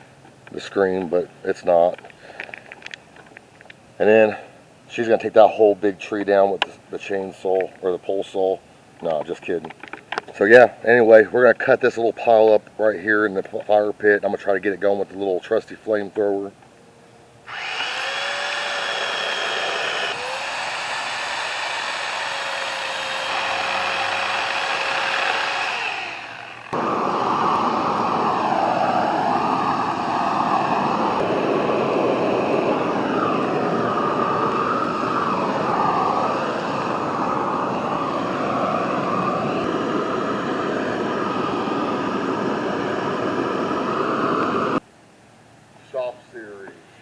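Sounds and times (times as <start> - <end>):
gas torch flame rushing: 17.5 - 44.8.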